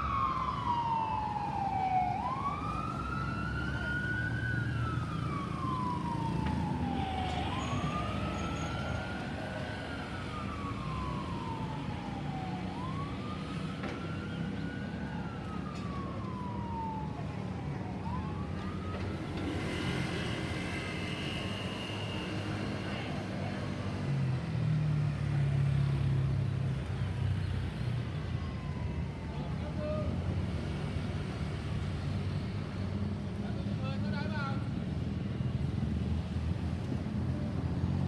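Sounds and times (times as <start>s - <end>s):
traffic rumble: 0.0s - 21.7s
ambulance siren wailing: 0.0s - 26.1s, 26.7s - 31.6s.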